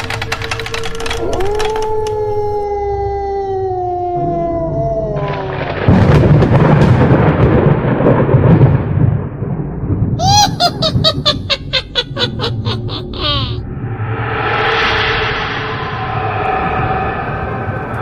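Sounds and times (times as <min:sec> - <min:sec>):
long howl: 0:01.0 - 0:05.9
thunderclap and rumbling thunder: 0:04.8 - 0:12.6.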